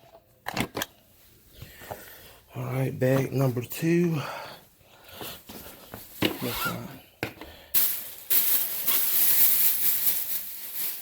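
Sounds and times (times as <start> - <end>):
plastic bag rustling: 5.4 - 6.9, 7.8 - 11.0.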